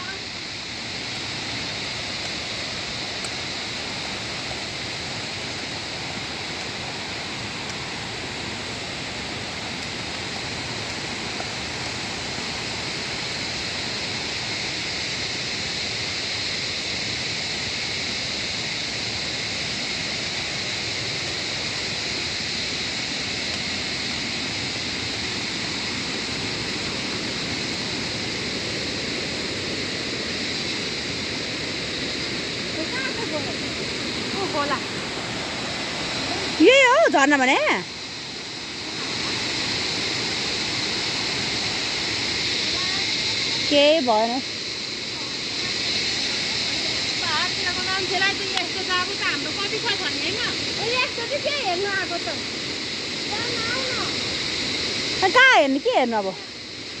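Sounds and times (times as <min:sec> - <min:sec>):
waterfall and stream rushing: 0:00.0 - 0:57.0.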